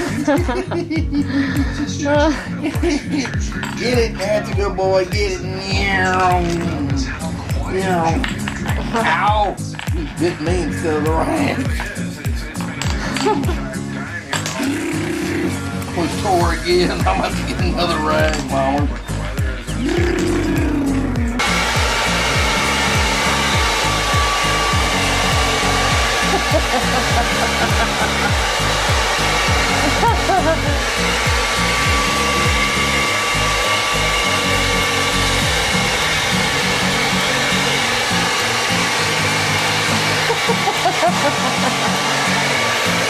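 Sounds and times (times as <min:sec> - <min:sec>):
blow dryer running: 0:20.0 - 0:43.0.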